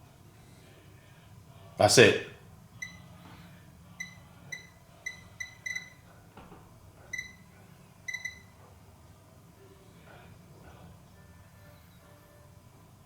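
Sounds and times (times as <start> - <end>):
short electronic beeps: 2.8 - 3.0, 4.0 - 6.0, 7.1 - 7.4, 8.1 - 8.5.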